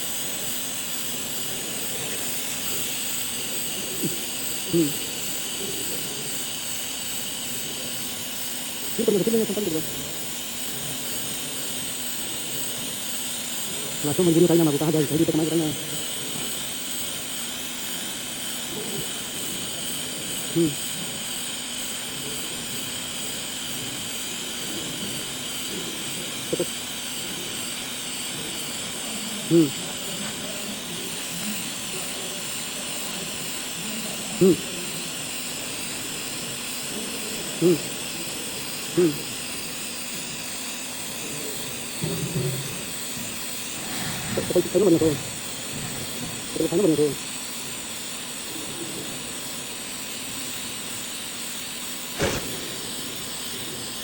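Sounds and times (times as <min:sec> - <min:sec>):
welding arc hissing: 0:00.0 - 0:54.0
short loud blip: 0:52.2 - 0:52.7.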